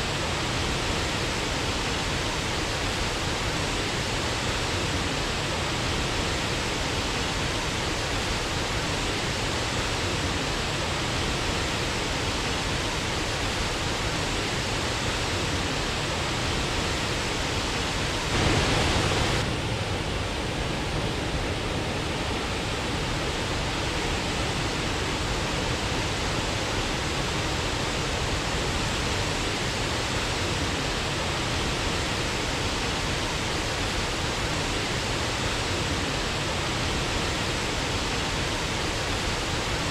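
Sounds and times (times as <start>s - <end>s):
waterfall rushing: 18.2s - 19.4s.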